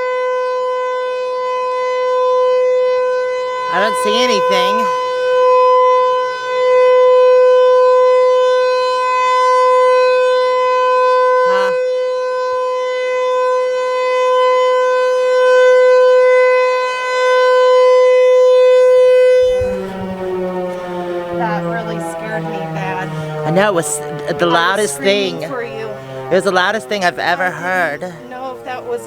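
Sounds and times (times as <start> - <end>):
tornado siren steady tone: 0.0 - 29.0.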